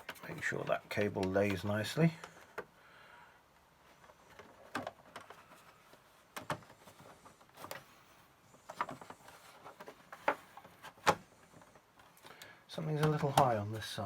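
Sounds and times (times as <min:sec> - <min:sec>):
plastic parts clicking and knocking: 0:03.9 - 0:07.9, 0:08.6 - 0:13.7.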